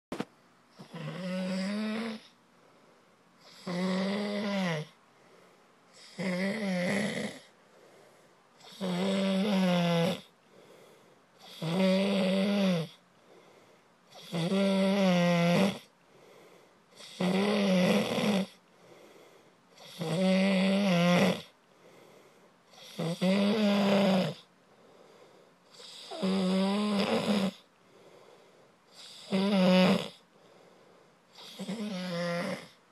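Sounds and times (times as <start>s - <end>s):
person snoring: 0.8s - 2.4s, 3.4s - 5.0s, 5.9s - 7.6s, 8.6s - 10.3s, 11.4s - 13.0s, 14.1s - 15.9s, 17.0s - 18.6s, 19.8s - 21.6s, 22.7s - 24.5s, 25.7s - 27.7s, 28.9s - 30.3s, 31.3s - 32.8s.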